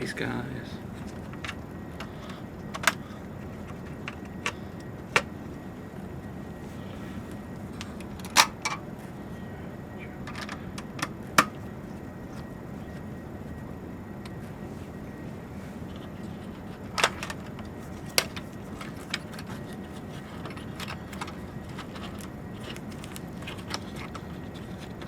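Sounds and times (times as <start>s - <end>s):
steady background noise: 0.0s - 25.0s
cable connectors clicking: 15.9s - 25.0s.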